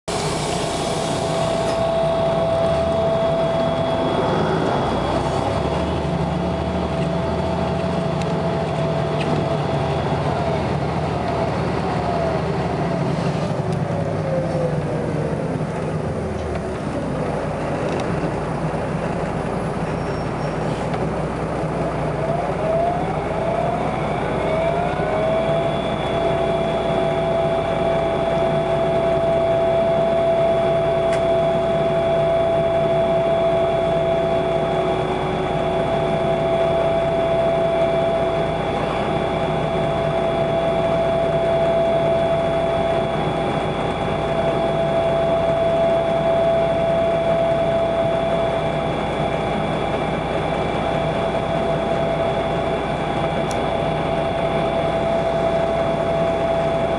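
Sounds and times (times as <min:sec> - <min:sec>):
bus engine rumble: 0:00.0 - 0:56.9
bus gearbox whine: 0:00.1 - 0:56.9.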